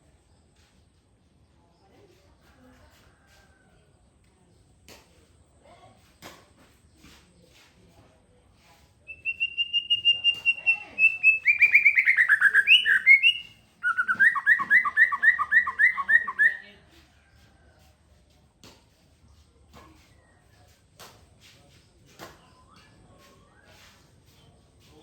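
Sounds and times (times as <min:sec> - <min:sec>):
songbird singing: 0:09.0 - 0:16.8.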